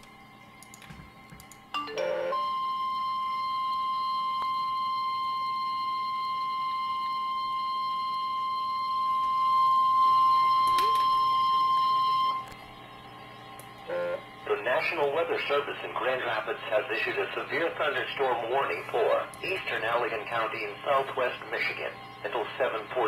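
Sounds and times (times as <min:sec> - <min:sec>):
piercing alarm beep: 0:01.8 - 0:14.4.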